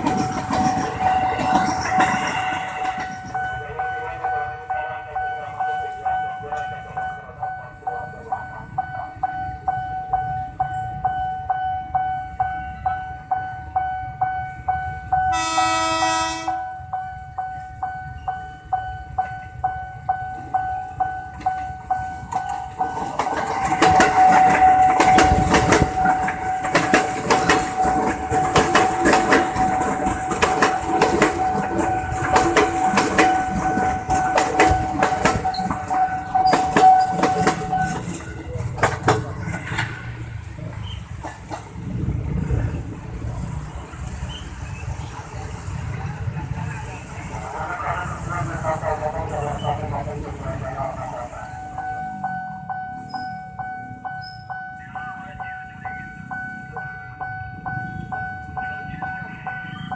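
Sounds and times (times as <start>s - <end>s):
train wheel clatter: 0.0s - 3.6s, 21.3s - 51.1s
train horn blast: 15.3s - 16.7s.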